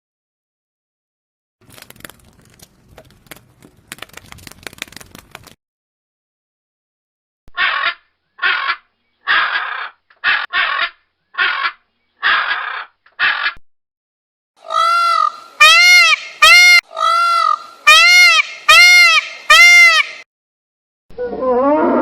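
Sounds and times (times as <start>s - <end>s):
crow cawing: 7.6s - 13.6s, 14.6s - 20.2s
loud bleating calls: 14.7s - 20.2s.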